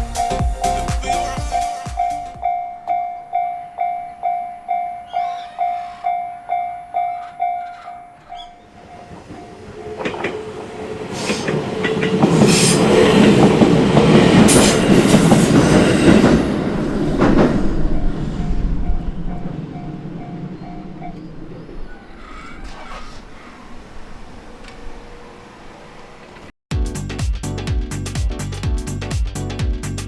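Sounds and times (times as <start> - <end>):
level-crossing alarm bell: 0.0 - 11.0, 18.0 - 21.3
train wheels clattering over rails: 7.2 - 21.3.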